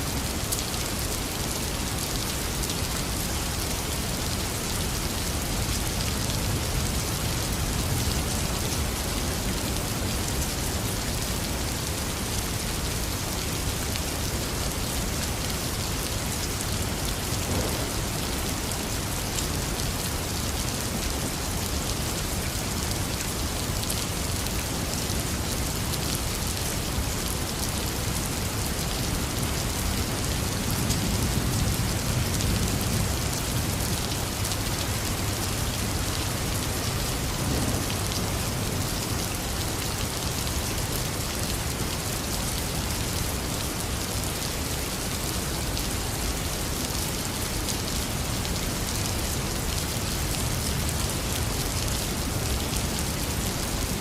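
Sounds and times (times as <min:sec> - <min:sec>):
heavy rain falling: 0:00.0 - 0:54.0
low rumble of thunder: 0:17.3 - 0:18.7.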